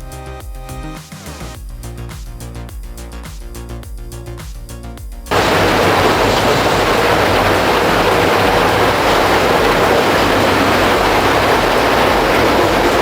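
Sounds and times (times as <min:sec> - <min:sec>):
heavy machinery running: 0:05.3 - 0:13.0.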